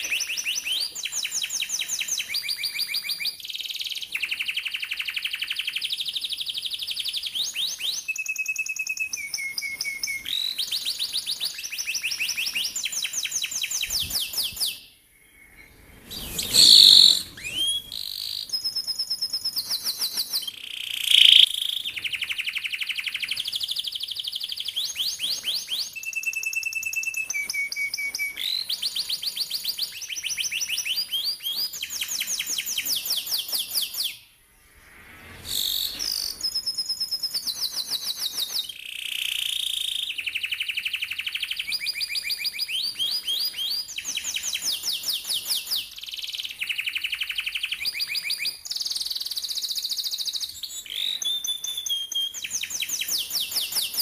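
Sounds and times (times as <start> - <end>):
canary singing rolling trills: 0.0 - 54.0.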